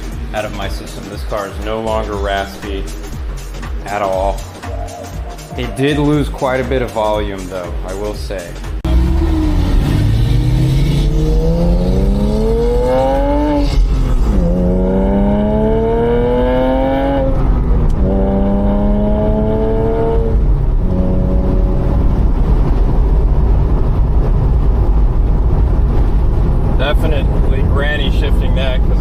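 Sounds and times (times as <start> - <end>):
road noise: 0.0 - 29.0
car engine accelerating: 8.8 - 29.0.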